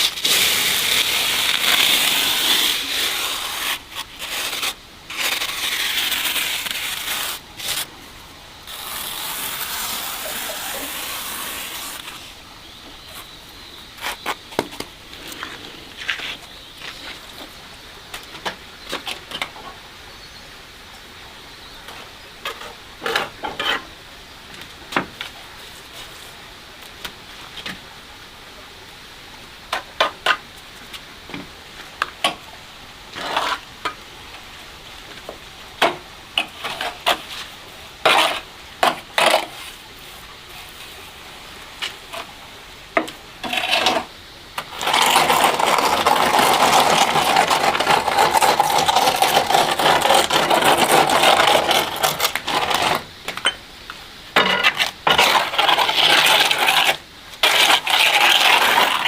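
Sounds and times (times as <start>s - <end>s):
hand tool scraping hard surface: 35.8s - 39.7s, 43.4s - 53.1s, 54.4s - 59.0s.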